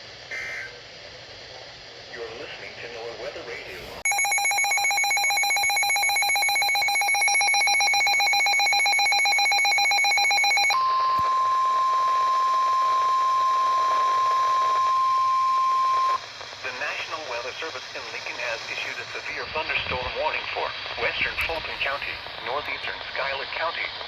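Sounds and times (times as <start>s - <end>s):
steady single-pitch alarm tone: 4.0s - 16.2s.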